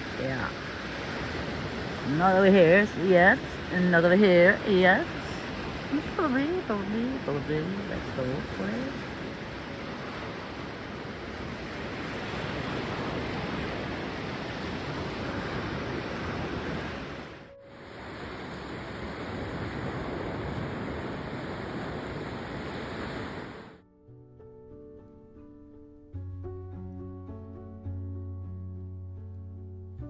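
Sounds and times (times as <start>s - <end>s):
sea waves washing onto shore: 0.0s - 23.8s
wind on microphone: 0.0s - 23.8s
music: 2.1s - 9.0s, 17.4s - 18.1s, 23.8s - 30.0s.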